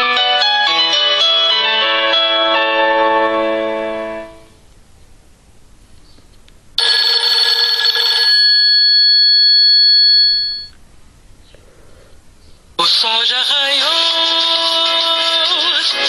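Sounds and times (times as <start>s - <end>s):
phone ringtone: 0.0s - 4.3s, 6.8s - 10.8s.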